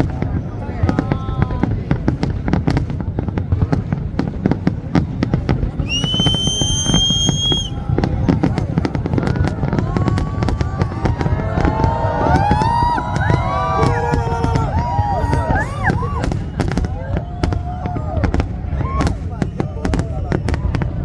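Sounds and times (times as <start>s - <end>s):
fireworks exploding: 0.0s - 21.0s
high whistle: 5.8s - 7.8s
people calling out: 8.5s - 17.2s.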